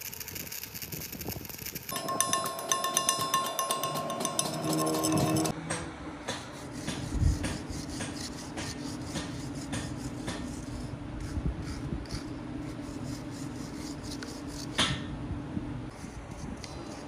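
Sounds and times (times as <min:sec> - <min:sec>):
machine hum: 0:01.9 - 0:05.7
loud metal clack: 0:01.9 - 0:10.4.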